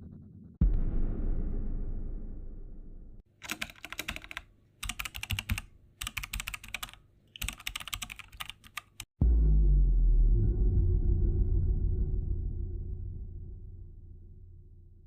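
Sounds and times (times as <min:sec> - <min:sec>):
low boom: 0:00.0 - 0:03.2, 0:09.2 - 0:15.0
keyboard typing: 0:03.4 - 0:09.1.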